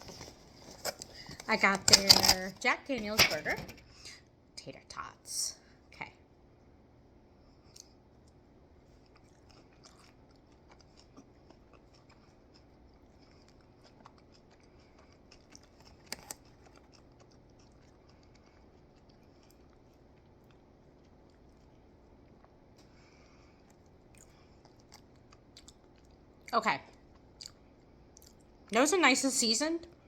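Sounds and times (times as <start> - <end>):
chewing crunchy food: 7.5 - 28.7.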